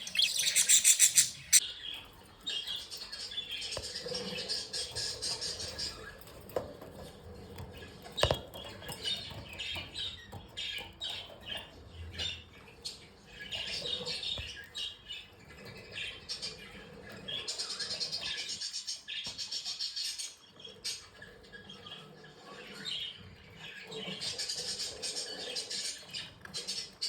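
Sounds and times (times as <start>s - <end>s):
budgerigars chirping and warbling: 0.0s - 27.0s.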